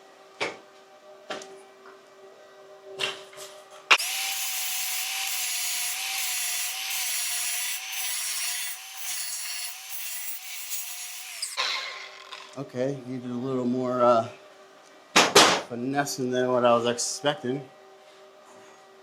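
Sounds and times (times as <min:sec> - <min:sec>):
angle grinder grinding metal: 0:04.0 - 0:12.6.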